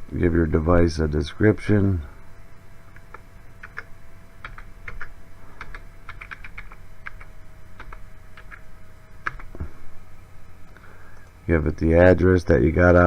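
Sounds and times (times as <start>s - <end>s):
keyboard typing: 2.9s - 9.7s.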